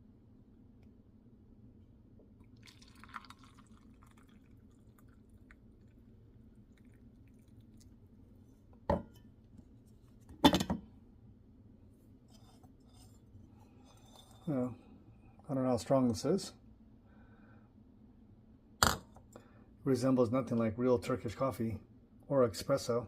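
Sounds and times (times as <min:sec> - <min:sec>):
coffee trickling: 0:02.3 - 0:08.4.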